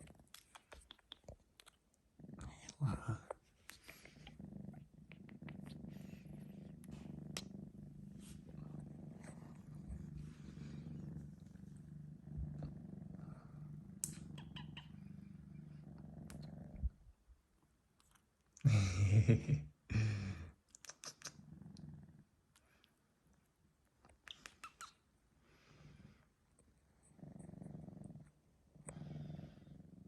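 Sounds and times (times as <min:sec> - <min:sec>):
kitten purring: 0:00.0 - 0:17.4, 0:20.3 - 0:22.9, 0:25.6 - 0:30.0.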